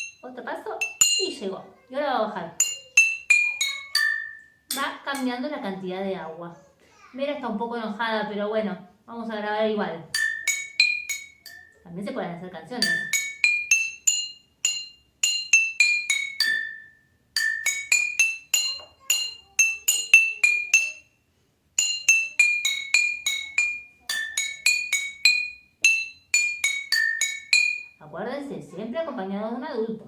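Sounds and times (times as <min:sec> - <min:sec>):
glass jars struck playing a tune: 0:00.0 - 0:01.5, 0:02.5 - 0:05.4, 0:10.1 - 0:21.2, 0:21.8 - 0:28.0.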